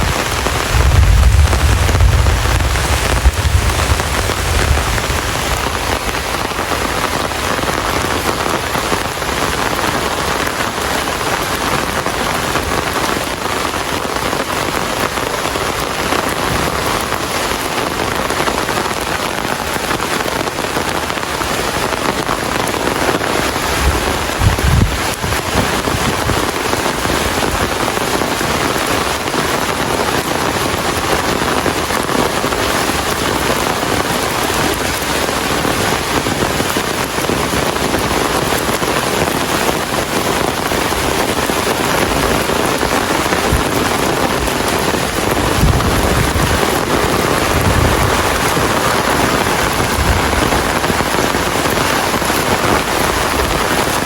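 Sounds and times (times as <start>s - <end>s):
low rumbles: 0.0s - 6.5s
rain pattering: 0.0s - 54.0s.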